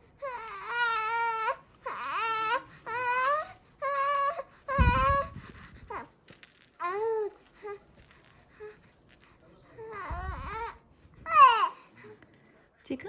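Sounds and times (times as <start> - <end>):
baby crying: 0.2 - 6.1, 9.8 - 11.8
low thump: 4.8 - 5.6.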